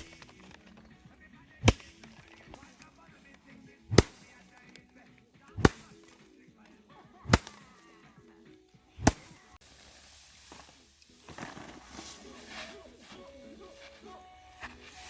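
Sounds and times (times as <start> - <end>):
sharp slapping strikes: 0.0 - 0.2, 1.6 - 2.6, 3.9 - 4.4, 5.5 - 6.2, 7.3 - 7.8, 9.0 - 9.5.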